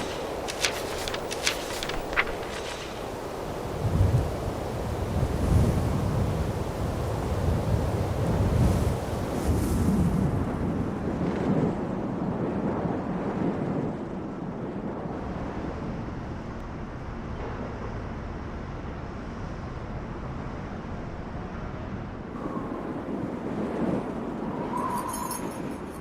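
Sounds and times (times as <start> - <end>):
wind blowing: 0.0 - 16.5, 22.2 - 26.0.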